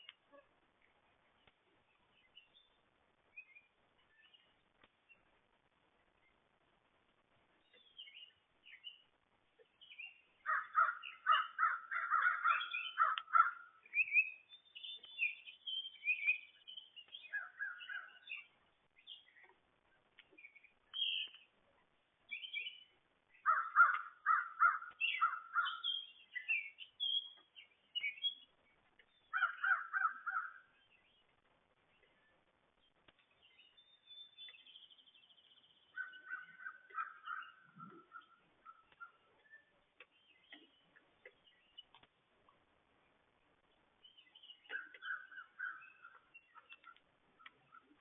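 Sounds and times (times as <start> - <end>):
birds repeated low calls: 7.6 - 19.6, 20.2 - 21.5, 22.3 - 31.3, 31.9 - 42.1, 44.0 - 48.0
high bird chirps: 9.8 - 19.6, 22.3 - 31.2, 33.4 - 42.0, 44.0 - 48.0.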